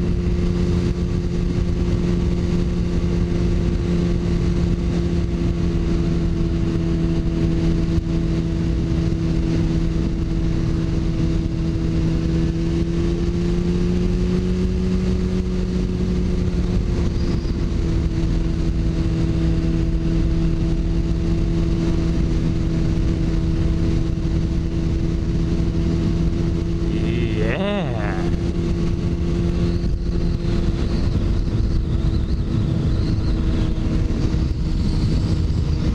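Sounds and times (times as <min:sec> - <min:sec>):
motorcycle engine cruising: 0:00.0 - 0:35.9
road noise: 0:23.9 - 0:35.9.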